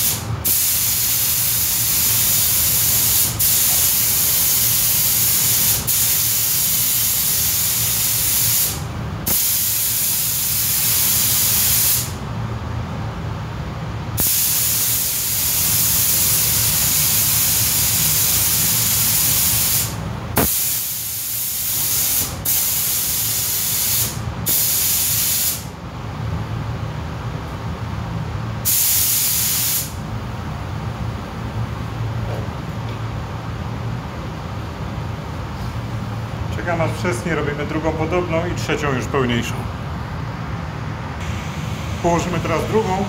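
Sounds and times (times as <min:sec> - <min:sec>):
paint spray gun hissing: 0:00.0 - 0:12.2, 0:14.2 - 0:25.6, 0:28.7 - 0:30.0
steady low hum: 0:00.0 - 0:22.6, 0:25.6 - 0:28.7, 0:29.9 - 0:43.0.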